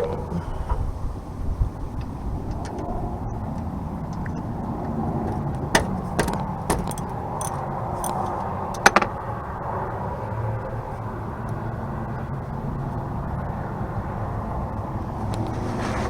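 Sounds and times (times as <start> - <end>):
steady low rumble: 0.0 - 11.3
metal tools clinking: 5.9 - 9.0.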